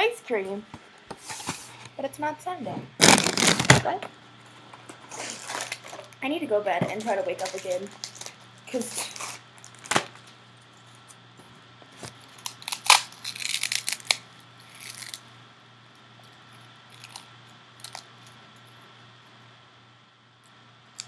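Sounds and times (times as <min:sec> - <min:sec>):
food packaging crinkling: 0:03.0 - 0:03.8, 0:05.1 - 0:06.2, 0:07.4 - 0:10.3, 0:12.0 - 0:15.2
crackling: 0:03.0 - 0:04.0.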